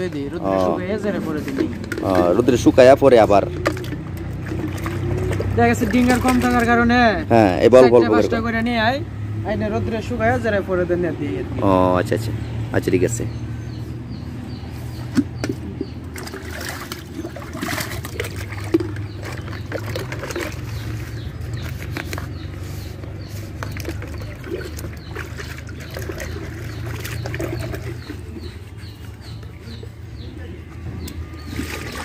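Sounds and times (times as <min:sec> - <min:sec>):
water sloshing in bucket: 0:00.0 - 0:07.2, 0:14.9 - 0:29.6, 0:31.0 - 0:32.0
chicks peeping: 0:20.6 - 0:31.5.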